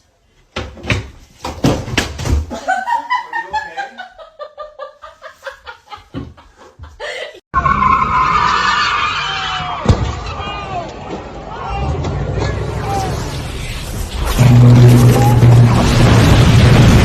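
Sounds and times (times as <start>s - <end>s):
person laughing hard: 2.5s - 7.4s
droning tone: 14.1s - 17.0s.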